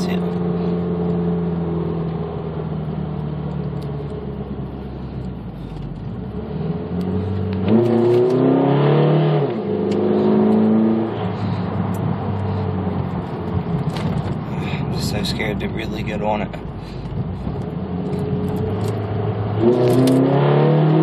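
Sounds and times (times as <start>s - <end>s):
misfiring car engine: 0.0s - 21.0s.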